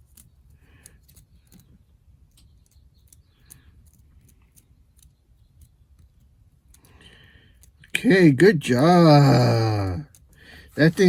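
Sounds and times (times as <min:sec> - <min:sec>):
small metal mechanism clicking: 0:00.0 - 0:07.9.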